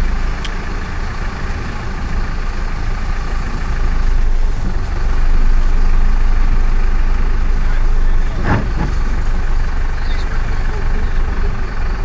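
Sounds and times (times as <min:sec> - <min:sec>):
truck engine rumbling: 0:00.0 - 0:12.0.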